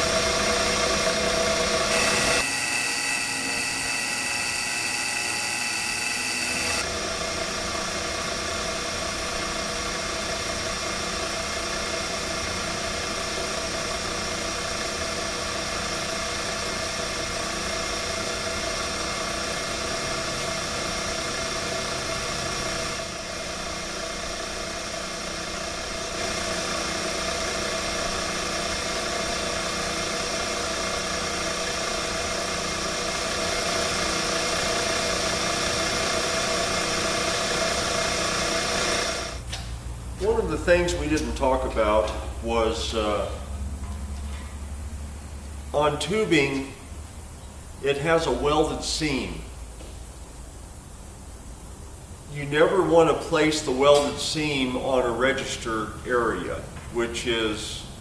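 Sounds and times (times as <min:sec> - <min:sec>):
milling machine cutting steel: 0:01.9 - 0:06.8.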